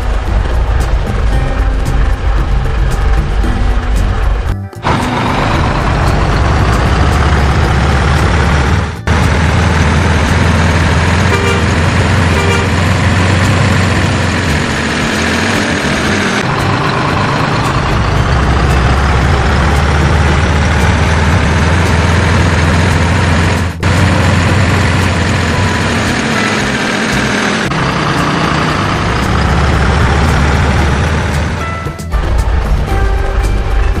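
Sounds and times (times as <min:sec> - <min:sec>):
truck engine rumble: 0:00.0 - 0:34.0
truck horn toots: 0:04.8 - 0:16.4, 0:19.8 - 0:32.0.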